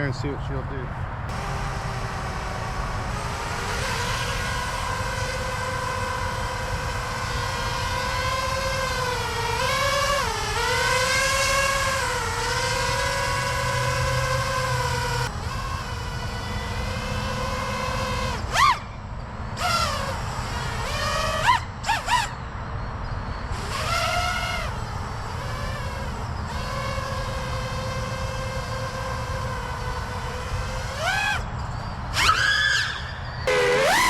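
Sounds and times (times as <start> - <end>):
drone motors whining: 1.3 - 34.0.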